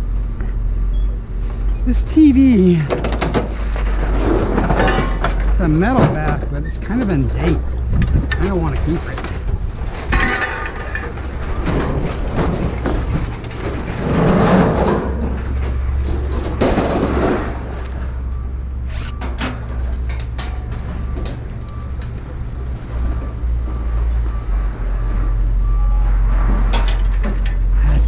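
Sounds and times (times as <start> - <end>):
low rumble: 0.0 - 28.0
scraping or rustling noise: 3.3 - 5.6, 7.2 - 17.8, 26.0 - 27.2.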